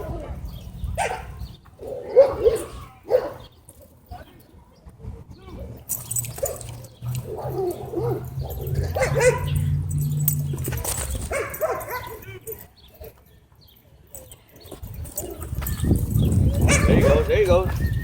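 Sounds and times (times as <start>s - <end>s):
dogs barking: 0.9s - 3.5s, 6.3s - 13.2s, 16.3s - 17.4s
dogs whining: 5.9s - 13.2s, 15.0s - 18.0s.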